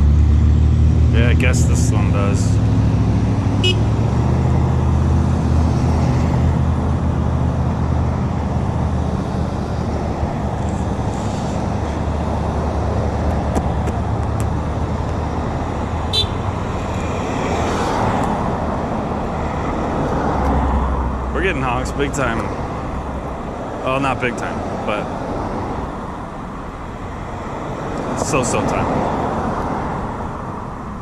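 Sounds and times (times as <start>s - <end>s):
car engines running: 0.0s - 31.0s
vehicles passing: 0.0s - 31.0s.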